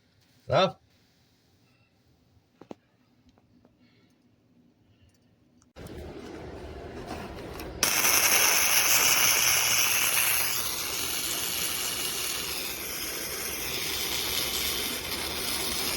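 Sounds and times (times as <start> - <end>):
welding arc sizzling hiss: 7.8 - 15.9.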